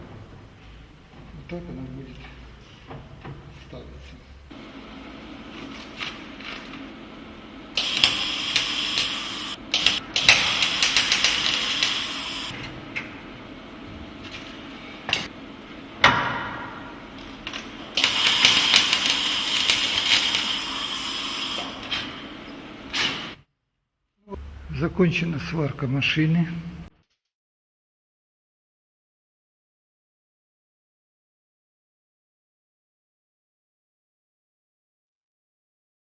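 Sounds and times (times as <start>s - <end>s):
welder crackling: 7.7s - 12.6s, 17.3s - 23.4s.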